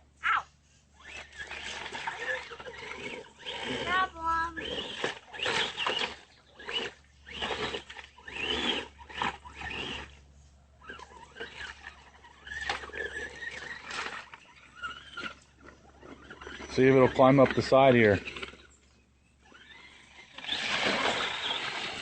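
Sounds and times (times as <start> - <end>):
rc car electric motor whining: 0.2 - 22.0.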